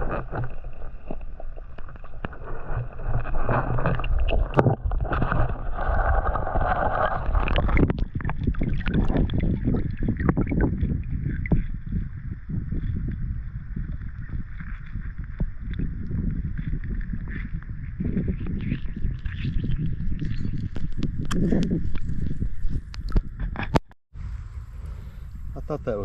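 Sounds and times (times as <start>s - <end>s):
knocks and scrapes: 0.0s - 11.7s
water splashing in a creek: 0.0s - 23.3s
low rumble: 24.1s - 26.0s.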